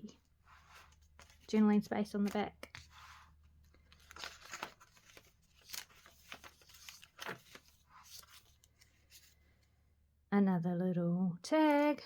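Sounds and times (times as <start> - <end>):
paper rustling and clicking: 0.7 - 9.4.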